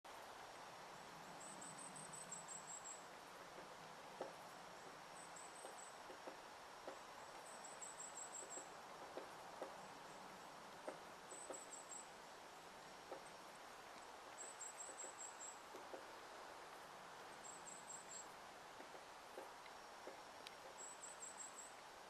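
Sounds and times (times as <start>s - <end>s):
woodpecker pecking on wood: 3.5s - 7.5s, 8.4s - 9.8s, 10.7s - 11.8s, 12.6s - 16.2s, 18.8s - 20.8s.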